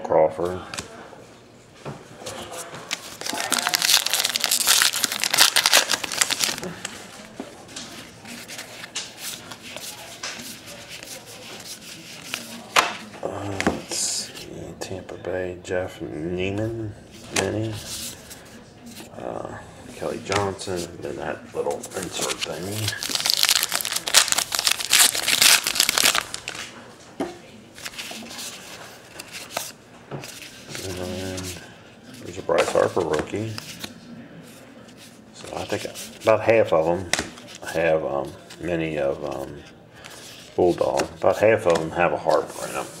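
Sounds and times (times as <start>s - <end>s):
wrapper crinkling and crumpling: 2.9s - 7.2s, 21.9s - 26.7s.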